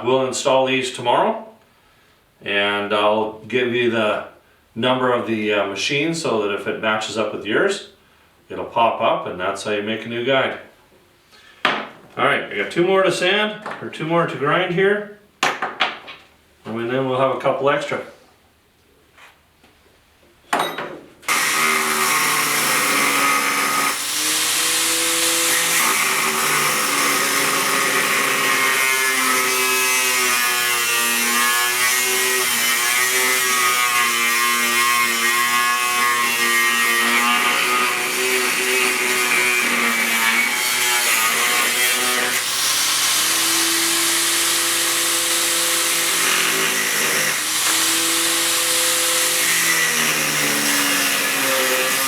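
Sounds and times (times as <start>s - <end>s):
power grinder grinding metal: 21.3s - 52.0s.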